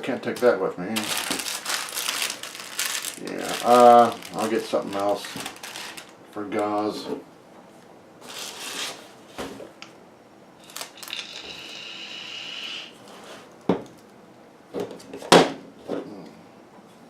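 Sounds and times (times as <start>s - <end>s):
packaging rustling: 0.4s - 6.2s, 8.2s - 9.6s, 10.6s - 11.4s.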